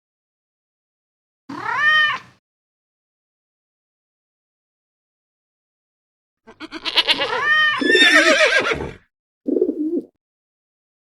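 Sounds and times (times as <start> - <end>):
farm animal calling: 6.5 - 8.8.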